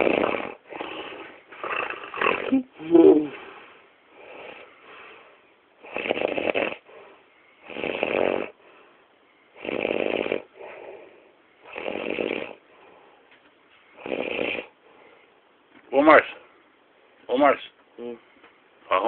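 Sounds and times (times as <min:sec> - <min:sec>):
person snoring: 0:00.0 - 0:03.6, 0:05.8 - 0:06.9, 0:07.6 - 0:08.6, 0:09.6 - 0:10.8, 0:11.7 - 0:12.6, 0:14.0 - 0:14.7
faint breaths: 0:00.0 - 0:17.2, 0:18.0 - 0:18.8.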